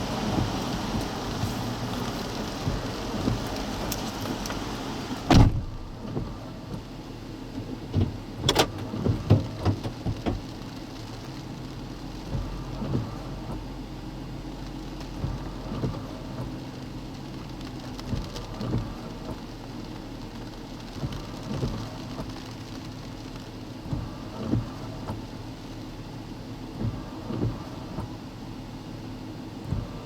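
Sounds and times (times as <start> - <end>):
low steady hum: 0.0 - 30.0
rain and wind hiss: 0.0 - 30.0
heavy thud: 5.3 - 6.0.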